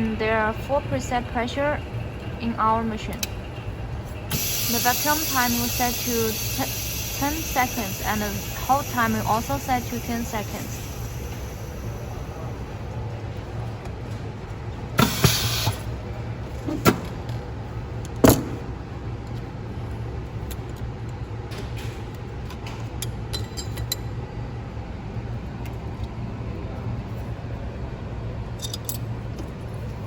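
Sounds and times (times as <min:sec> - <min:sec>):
machine low hum: 0:00.0 - 0:22.8
air hissing: 0:04.3 - 0:12.4, 0:15.0 - 0:15.9.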